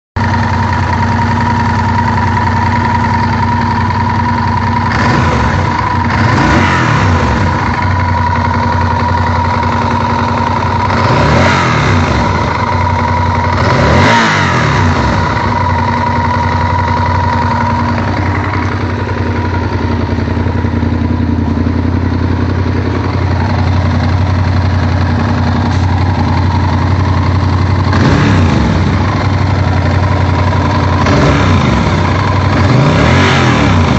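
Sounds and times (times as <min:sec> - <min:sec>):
motorcycle engine idling with knock: 0:00.2 - 0:14.0, 0:14.6 - 0:32.8
engine revving from throttle blips: 0:04.9 - 0:07.8, 0:10.9 - 0:12.6, 0:13.5 - 0:15.6, 0:27.9 - 0:29.2, 0:30.9 - 0:33.9.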